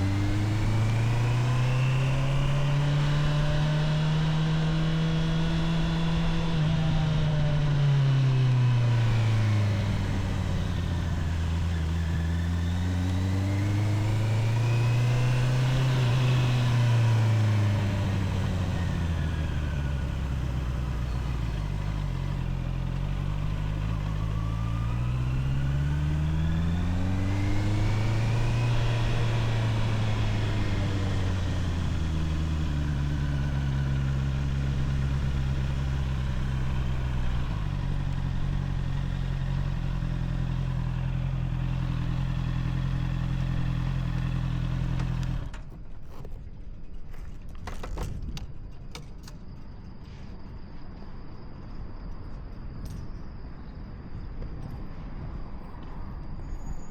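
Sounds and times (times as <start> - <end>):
motorcycle engine revving: 0.0 - 45.5.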